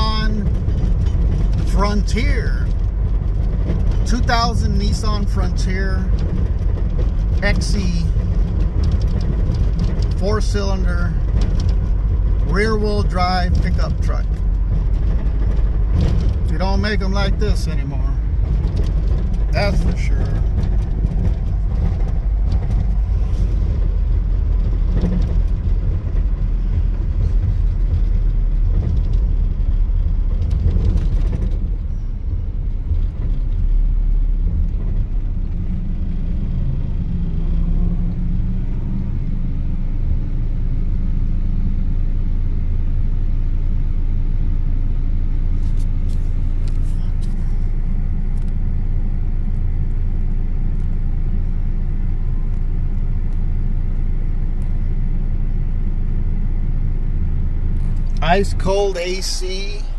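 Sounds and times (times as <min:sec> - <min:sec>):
knocks and rattles: 0:00.0 - 0:16.7, 0:18.2 - 0:32.0
pickup engine running: 0:00.0 - 0:59.9
road noise rumble: 0:00.0 - 0:59.9.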